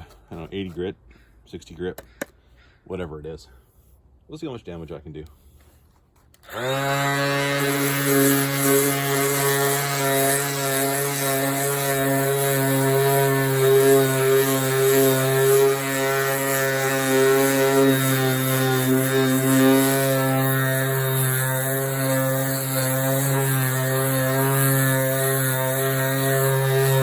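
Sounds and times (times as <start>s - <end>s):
power sander running: 6.4s - 27.0s.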